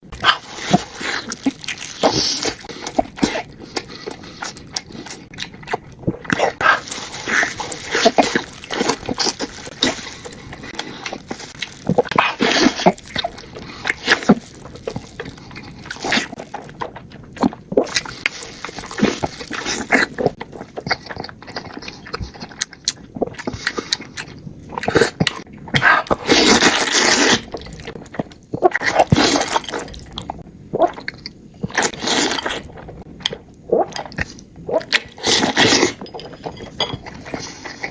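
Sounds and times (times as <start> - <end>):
noodles being slurped: 0.1 - 22.2, 25.8 - 30.2.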